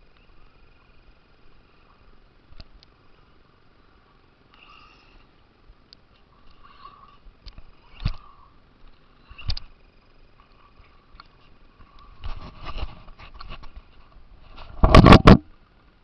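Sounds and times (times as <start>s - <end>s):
faint motor whine: 0.0s - 16.0s
toy car knocking over bumps: 14.8s - 15.5s.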